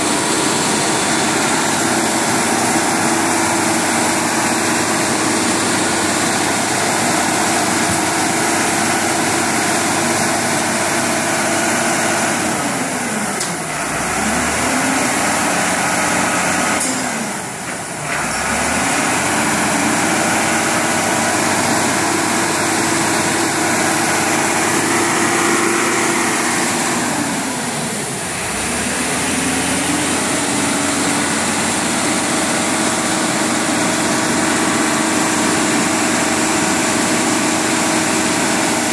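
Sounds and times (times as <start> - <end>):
vehicle engine revving: 13.6 - 17.0, 18.0 - 38.9.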